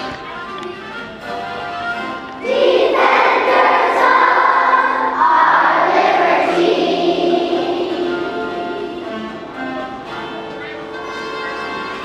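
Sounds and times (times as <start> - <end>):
music: 0.0 - 12.0
children's voices shouting together: 2.4 - 9.4.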